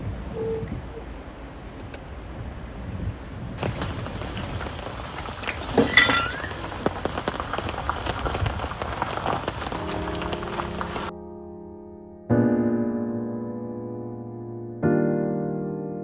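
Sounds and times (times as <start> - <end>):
rain pattering: 0.0 - 11.1
soft piano music: 9.6 - 16.0.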